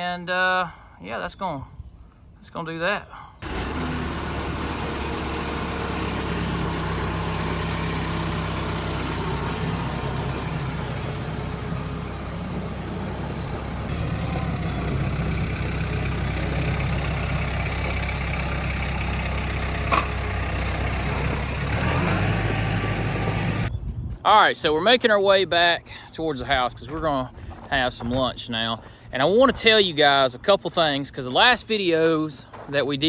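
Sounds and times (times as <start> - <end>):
machine engine running: 3.4 - 23.7.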